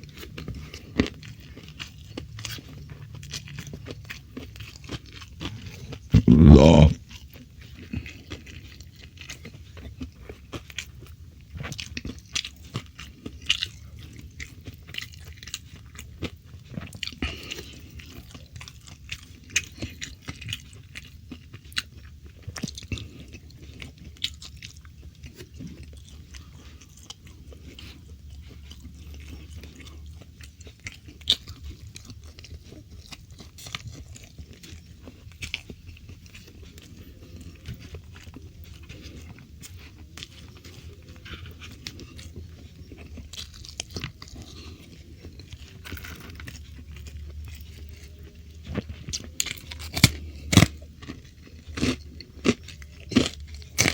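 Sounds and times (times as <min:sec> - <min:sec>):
chewing and crunching food: 0:00.0 - 0:53.9
mouth smacks: 0:06.2 - 0:07.0.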